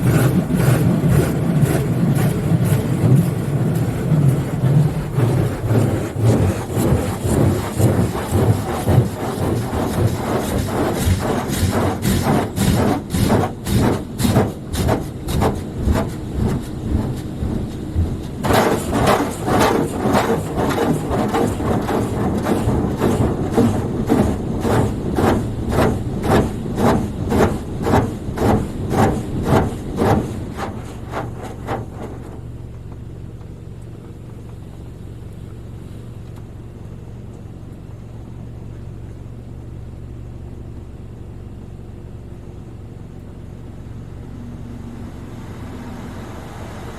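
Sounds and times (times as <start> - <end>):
spray jets beating on car: 0.0 - 32.6
low equipment hum: 0.0 - 46.9.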